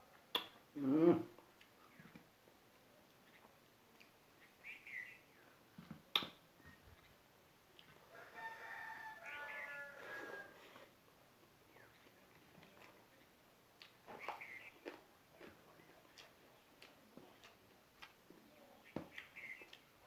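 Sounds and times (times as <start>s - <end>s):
rooster crowing: 8.1s - 10.7s.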